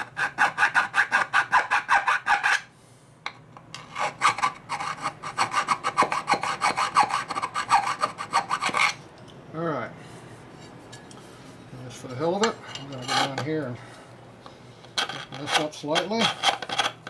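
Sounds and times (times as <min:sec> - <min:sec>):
hand file strokes: 0:00.0 - 0:02.7, 0:03.8 - 0:09.0, 0:15.0 - 0:17.0.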